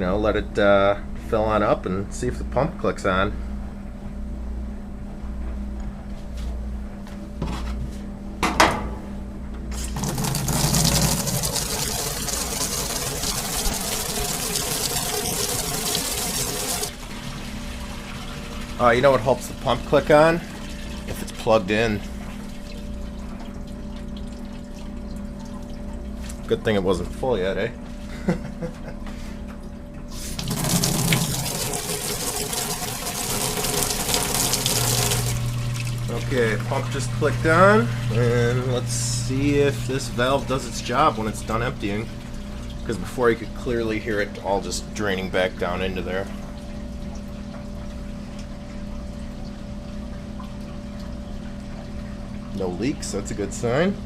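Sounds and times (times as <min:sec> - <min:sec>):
low steady hum: 0:00.0 - 0:54.0
water running into sink: 0:09.8 - 0:26.9, 0:30.2 - 0:47.7.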